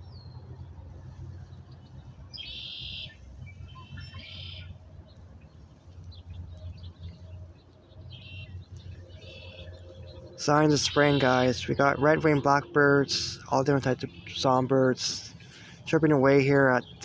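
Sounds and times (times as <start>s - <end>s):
buzzy trilling bird songs: 0.0s - 17.0s
short bird chirps: 2.4s - 4.8s, 8.1s - 9.8s
steady low rumble: 3.1s - 17.0s.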